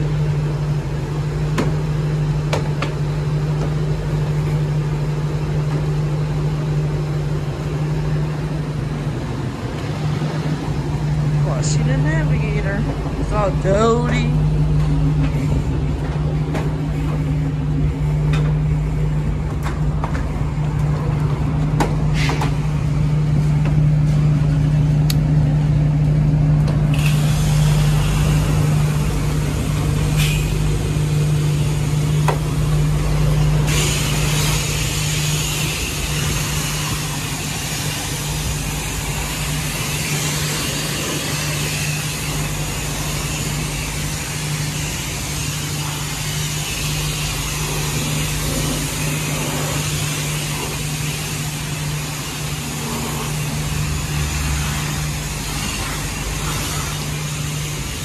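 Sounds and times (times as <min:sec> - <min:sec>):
low machine hum: 0:00.0 - 0:58.0
high-pressure water spray hissing: 0:22.0 - 0:24.9, 0:26.8 - 0:58.0.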